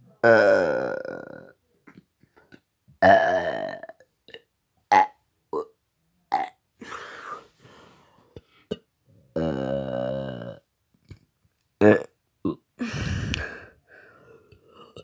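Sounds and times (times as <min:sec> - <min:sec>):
man burping: 0:00.2 - 0:01.6, 0:03.0 - 0:05.7, 0:06.3 - 0:06.6, 0:08.7 - 0:10.6, 0:11.8 - 0:13.6.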